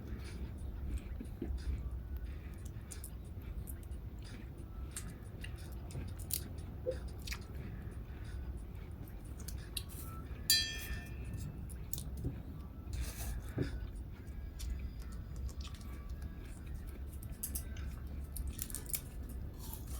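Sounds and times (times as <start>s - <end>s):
crab shell cracking and chewing: 0.3s - 10.1s, 11.6s - 12.3s, 13.4s - 19.9s
ringing clink: 10.5s - 11.4s.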